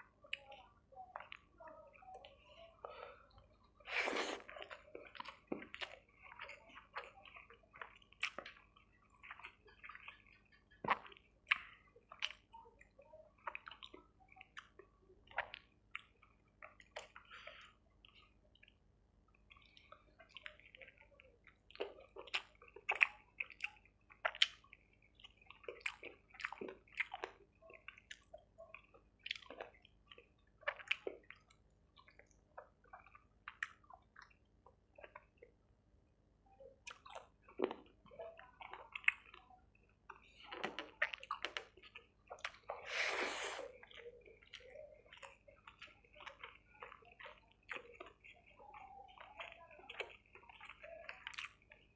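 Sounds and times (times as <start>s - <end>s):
wet chewing: 0.0s - 51.9s
lip smacks: 40.1s - 51.6s.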